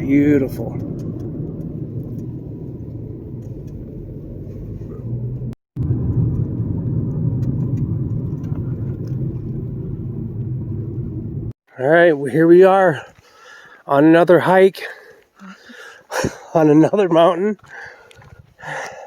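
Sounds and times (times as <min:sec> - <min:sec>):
car engine and road rumble: 0:00.0 - 0:13.4.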